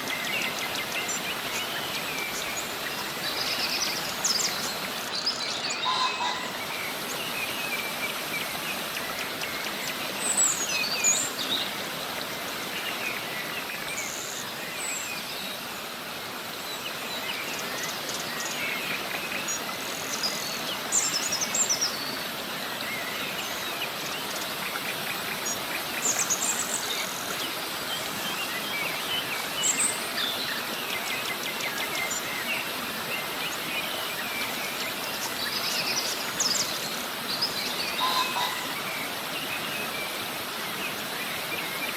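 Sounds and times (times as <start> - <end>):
birds chirping: 0.0 - 11.8, 31.4 - 41.9
river water rushing: 0.0 - 41.9.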